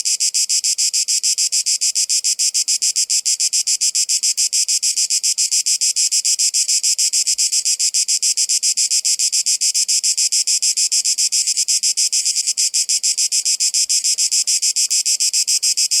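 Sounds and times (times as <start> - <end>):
cicadas buzzing: 0.1 - 16.0.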